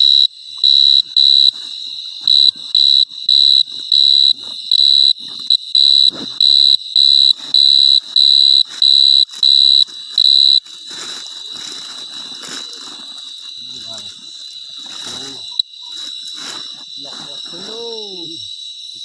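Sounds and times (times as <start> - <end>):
insect shrill pulsing call: 0.0 - 19.0
rustling: 0.7 - 17.8.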